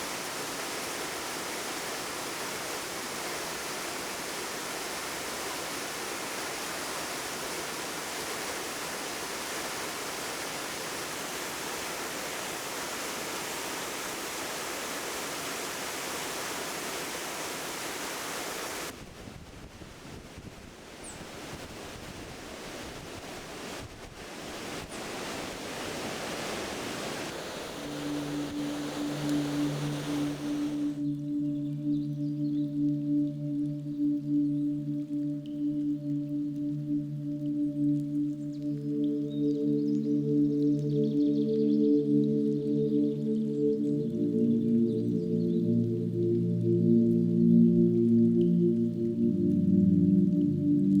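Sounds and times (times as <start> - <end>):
waterfall rushing: 0.0 - 19.0, 20.8 - 31.0
rushing water and wind: 0.0 - 31.1.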